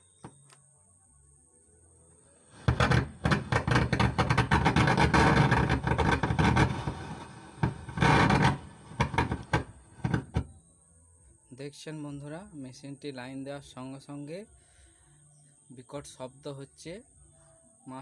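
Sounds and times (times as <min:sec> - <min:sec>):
harsh crackling amplifier noise: 0:02.6 - 0:10.5.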